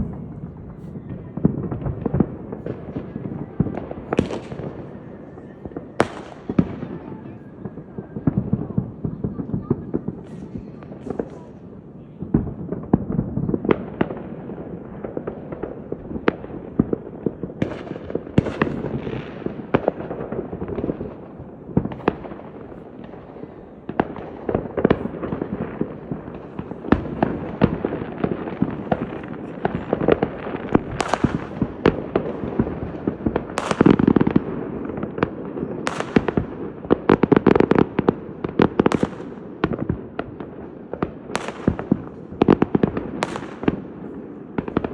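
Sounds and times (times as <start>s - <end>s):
firework bursts and booms: 0.0s - 44.9s.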